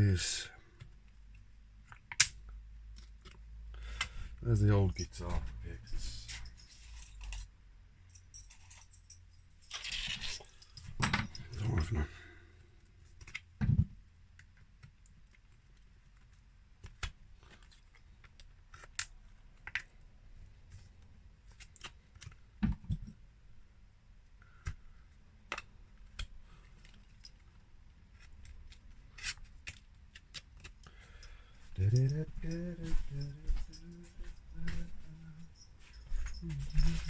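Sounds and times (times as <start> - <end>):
small tools and parts clattering: 4.0 - 7.5, 8.1 - 12.1, 28.1 - 37.0.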